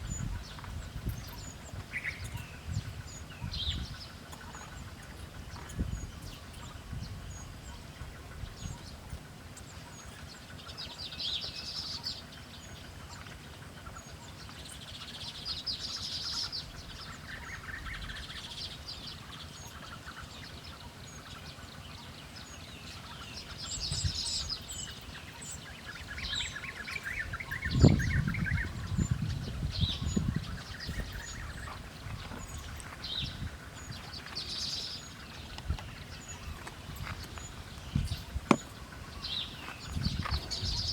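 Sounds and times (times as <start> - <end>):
small birds chattering: 0.0 - 40.9.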